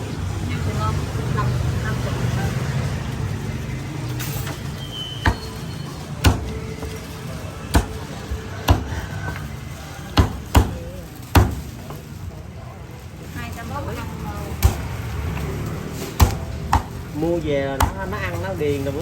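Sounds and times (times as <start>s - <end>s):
street traffic hum: 0.0s - 19.0s
cleaver chopping meat: 5.2s - 5.6s, 6.2s - 6.9s, 7.7s - 9.5s, 10.1s - 11.7s, 16.2s - 17.0s, 17.8s - 18.1s.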